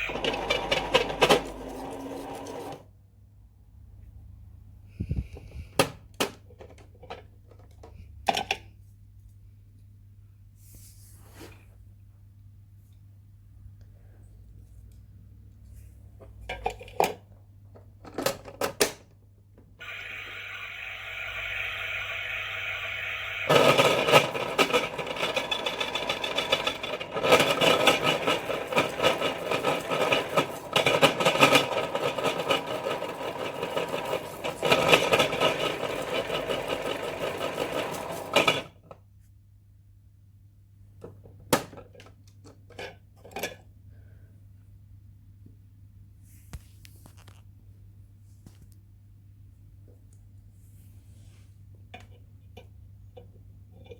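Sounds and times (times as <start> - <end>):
small electric motor whirring: 19.8 - 30.2.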